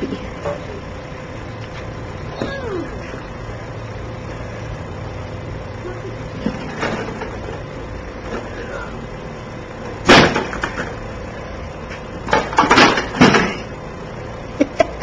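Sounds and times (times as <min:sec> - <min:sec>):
lawn mower being banged: 0:06.4 - 0:07.6, 0:09.9 - 0:11.0, 0:12.2 - 0:13.7.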